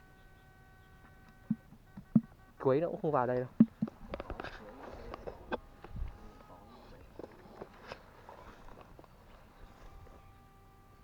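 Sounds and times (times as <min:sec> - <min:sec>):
faint steady high tone: 0:09.4 - 0:11.0.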